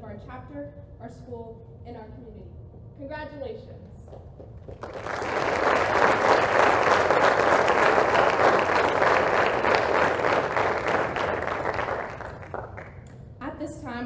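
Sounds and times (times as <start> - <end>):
audience applause: 4.6 - 13.1.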